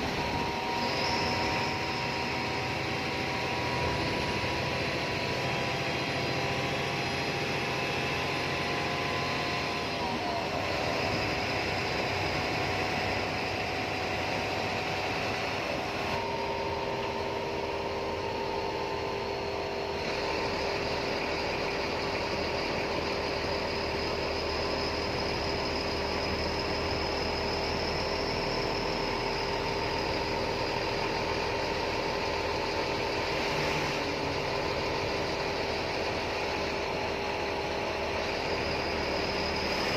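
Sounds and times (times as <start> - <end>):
whining tones sliding down: 0.0 - 31.9
bus engine: 0.0 - 39.9.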